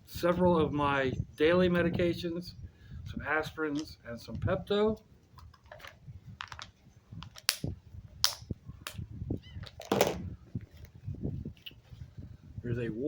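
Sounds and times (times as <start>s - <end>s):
small items clicking: 5.4s - 9.0s.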